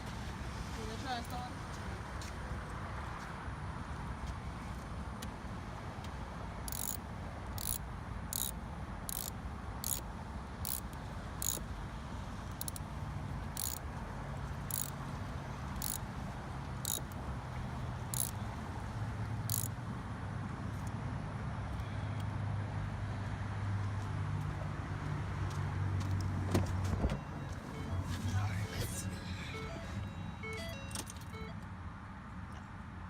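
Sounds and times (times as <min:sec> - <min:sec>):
low traffic hum: 0:00.0 - 0:33.0
scraping battery terminals: 0:06.7 - 0:07.8, 0:08.4 - 0:10.0, 0:10.7 - 0:11.6, 0:12.5 - 0:12.8, 0:13.6 - 0:13.8, 0:14.7 - 0:15.0, 0:15.8 - 0:16.0, 0:16.8 - 0:17.2, 0:18.2 - 0:18.4, 0:19.5 - 0:19.7.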